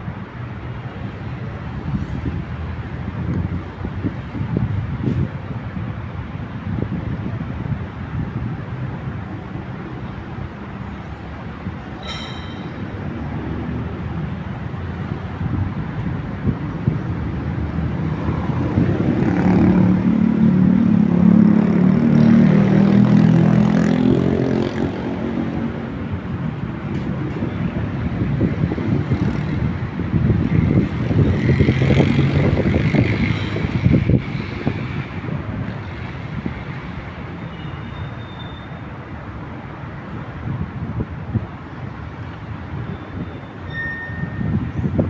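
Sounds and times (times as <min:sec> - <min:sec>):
city traffic noise: 0:00.0 - 0:45.0
vehicle engine passing: 0:17.7 - 0:26.9, 0:27.5 - 0:37.3.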